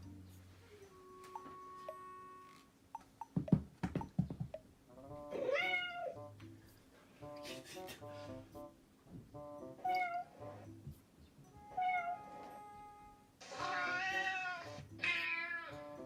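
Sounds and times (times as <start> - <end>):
background music with repeating melody: 0.0 - 16.0
cat meows: 13.6 - 15.8.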